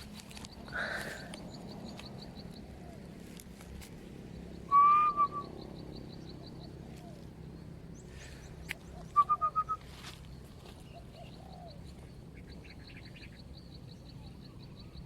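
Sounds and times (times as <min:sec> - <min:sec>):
bird whistled call: 0:04.6 - 0:05.8, 0:08.9 - 0:09.9.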